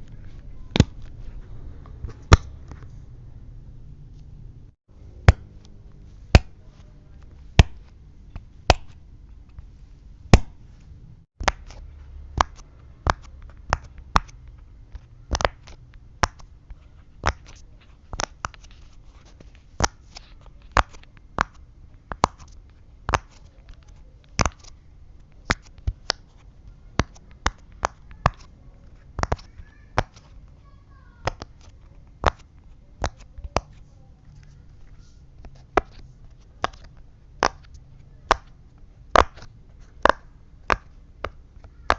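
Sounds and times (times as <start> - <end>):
fidget toy popping: 11.4 - 14.4, 35.7 - 41.9.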